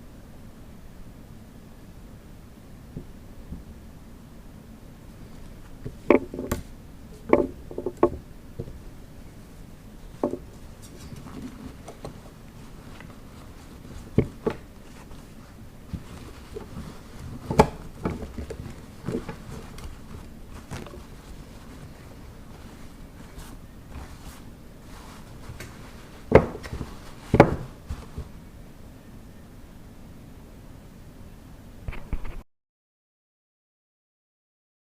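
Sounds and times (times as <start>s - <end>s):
objects knocking and tapping: 5.8s - 8.8s, 10.2s - 15.2s, 15.9s - 24.3s, 25.0s - 28.3s.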